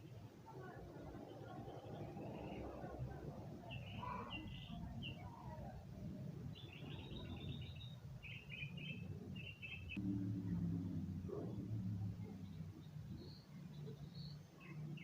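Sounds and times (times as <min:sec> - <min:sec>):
low background rumble: 0:00.7 - 0:15.0
bird chirping: 0:03.6 - 0:05.6, 0:06.4 - 0:10.0, 0:12.2 - 0:15.0.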